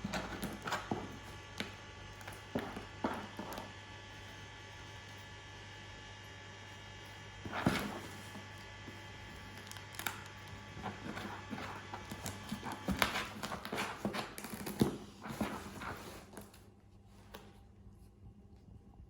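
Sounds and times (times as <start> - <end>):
cat scratching packaging: 0.0 - 5.4, 7.0 - 16.6
steady electrical hum: 0.0 - 19.0.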